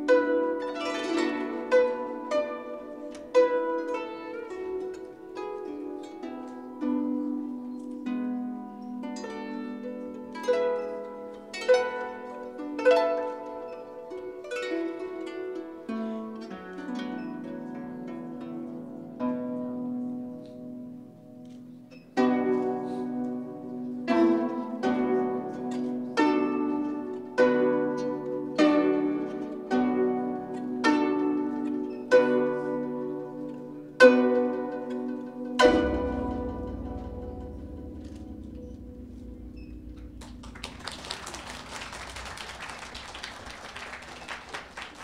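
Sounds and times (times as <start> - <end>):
plucked harp notes: 0.0 - 43.2
harp plucked notes and chords: 22.2 - 42.2
sustained low note: 35.6 - 42.4.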